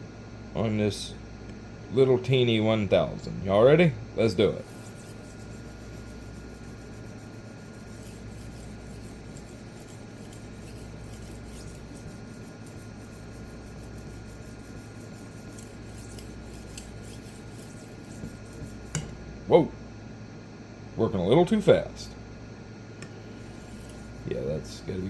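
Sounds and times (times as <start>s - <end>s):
knife scraping on sharpening stone: 4.6s - 19.1s, 23.4s - 24.3s.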